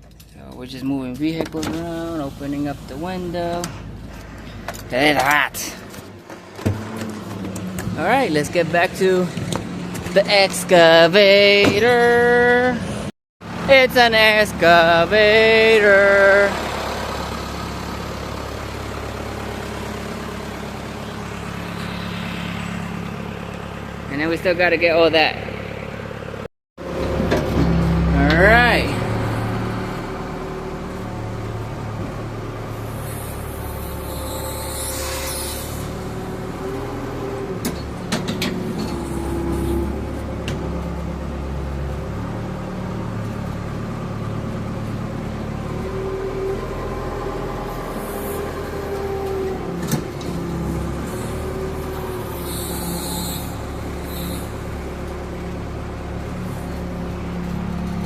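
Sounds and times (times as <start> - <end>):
engine whine: 0.0 - 58.0
excavator engine running: 0.0 - 58.0
short bursts of hissing: 32.8 - 35.9, 52.3 - 54.6.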